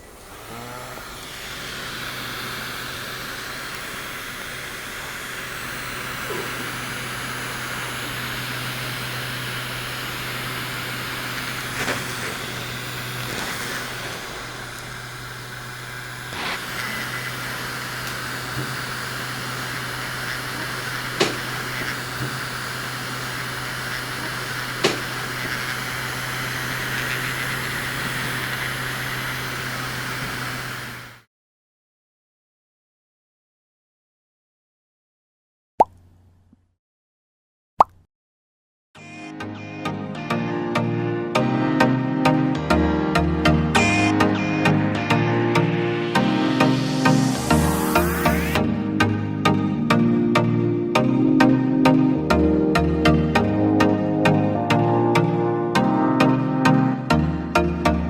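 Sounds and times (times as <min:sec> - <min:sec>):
small fan motor humming: 0:00.0 - 0:31.2, 0:42.2 - 0:50.4
sharp clicks: 0:19.7 - 0:25.8.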